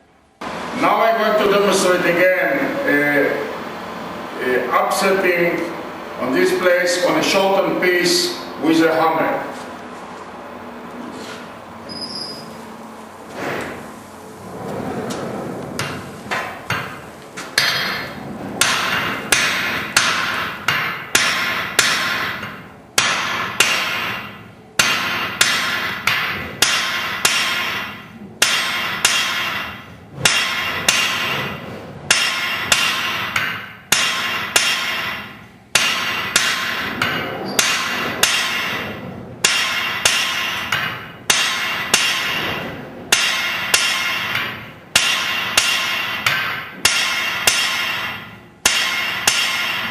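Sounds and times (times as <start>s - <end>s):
hammer blows on anvil: 17.6s - 49.9s.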